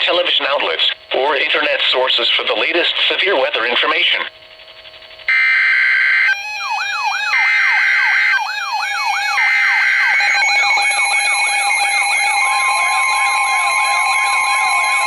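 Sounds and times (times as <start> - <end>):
digital data bursts: 0.0 - 6.6
siren sweeping up: 5.3 - 15.0.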